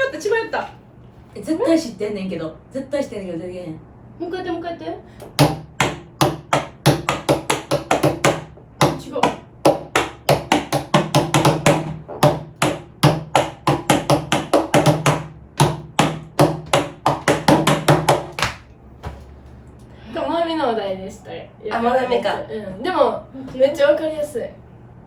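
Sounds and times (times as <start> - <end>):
hands drumming on tabletop: 5.3 - 18.6.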